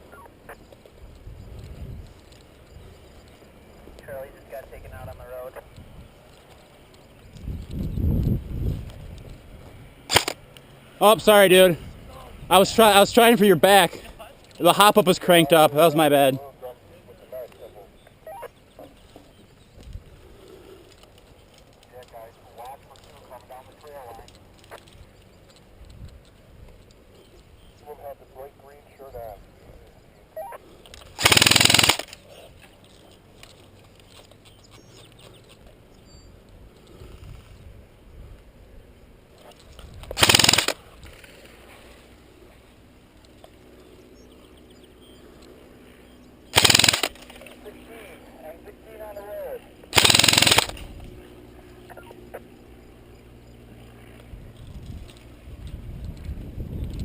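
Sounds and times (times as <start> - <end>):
airsoft gun full-auto burst: 10.1 - 10.4, 31.2 - 32.2, 40.2 - 40.8, 46.5 - 47.4, 49.9 - 50.9.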